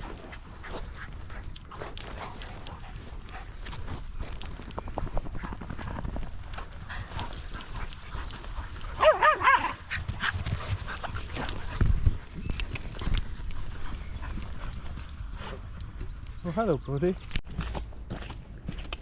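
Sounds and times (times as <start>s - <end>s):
dog yelping: 9.0s - 10.0s.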